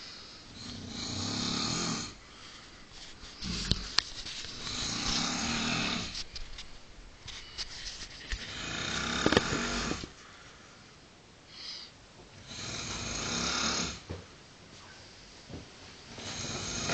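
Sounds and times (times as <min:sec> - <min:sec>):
man snoring: 0:00.6 - 0:02.2, 0:04.7 - 0:06.1, 0:08.4 - 0:10.1, 0:12.4 - 0:14.0, 0:16.1 - 0:16.9.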